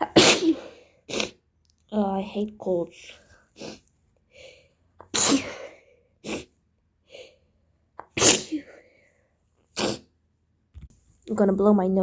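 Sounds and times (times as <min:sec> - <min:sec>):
woman sneezing: 0:00.0 - 0:01.4, 0:05.0 - 0:06.5, 0:08.0 - 0:08.8.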